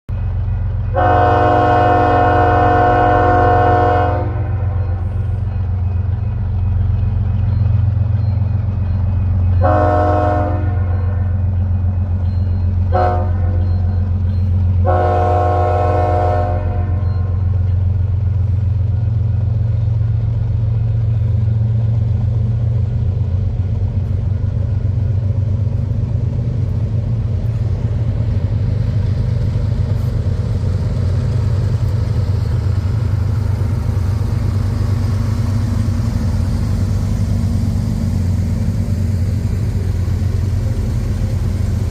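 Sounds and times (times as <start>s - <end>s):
train rumbling: 0.1s - 41.9s
locomotive air horn: 0.9s - 4.8s, 9.6s - 11.3s, 12.9s - 13.6s, 14.8s - 17.4s.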